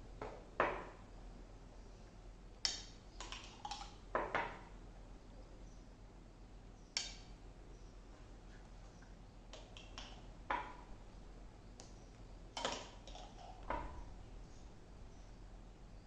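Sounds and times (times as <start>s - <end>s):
utensil clicking and scraping plate: 9.5s - 10.3s, 12.6s - 13.7s.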